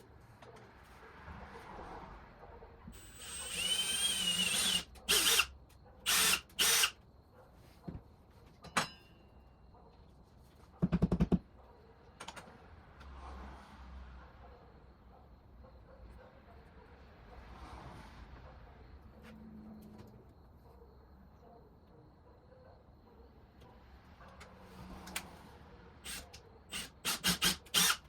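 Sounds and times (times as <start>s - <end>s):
power drill whining: 3.0s - 7.0s, 26.0s - 28.0s.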